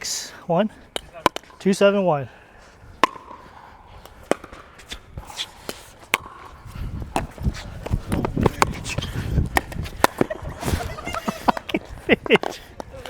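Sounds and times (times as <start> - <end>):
paddles striking plastic ball: 0.9 - 1.6, 3.0 - 10.4
movement rumble on body mic: 4.0 - 13.0.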